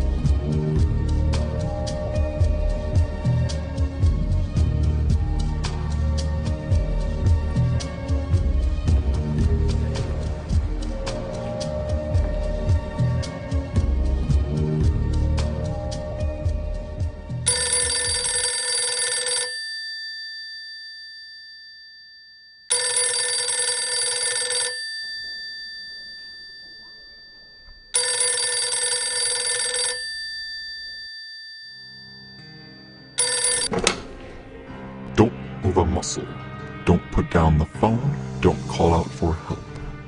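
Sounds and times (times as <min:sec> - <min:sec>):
music: 0:00.0 - 0:19.4, 0:32.1 - 0:40.0
payphone bell ringing: 0:17.5 - 0:34.0.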